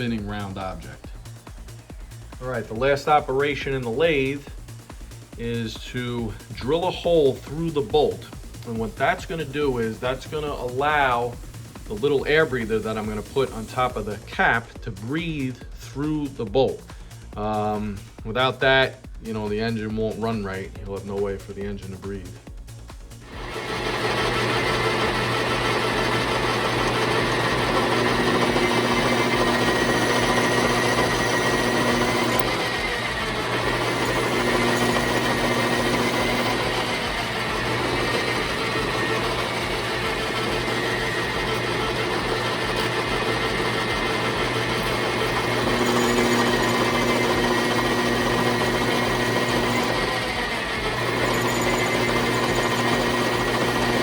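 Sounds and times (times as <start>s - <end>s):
metal lathe drilling hum and whine: 23.3s - 54.0s.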